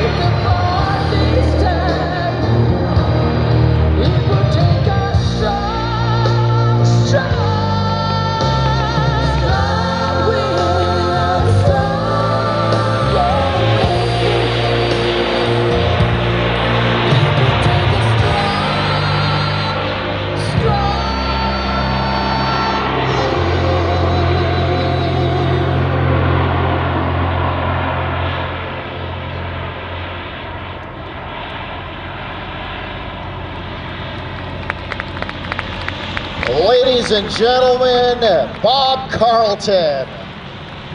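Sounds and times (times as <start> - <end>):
person singing with vibrato: 0.0 - 16.4, 17.0 - 27.2
steady bass line: 0.0 - 30.3
aircraft engine running: 0.0 - 40.9
strong low hum: 0.0 - 40.9.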